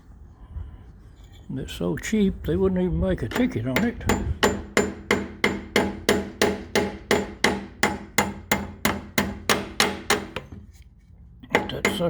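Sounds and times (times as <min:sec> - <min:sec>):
hammer striking metal pin: 0:03.3 - 0:10.6, 0:11.5 - 0:12.0.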